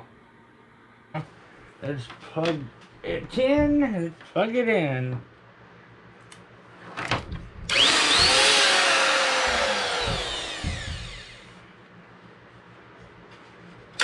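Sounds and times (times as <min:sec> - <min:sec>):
router motor whining: 0:07.7 - 0:11.5
handling knock: 0:09.5 - 0:11.3.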